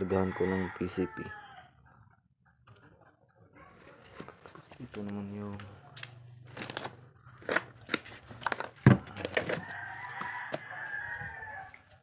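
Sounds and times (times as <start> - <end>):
rooster crowing: 0.0 - 1.8, 9.5 - 12.0.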